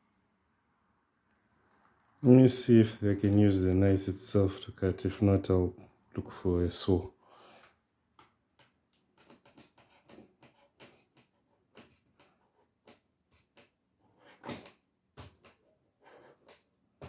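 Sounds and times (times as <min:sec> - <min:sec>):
knife scraping plastic: 0:09.1 - 0:13.6.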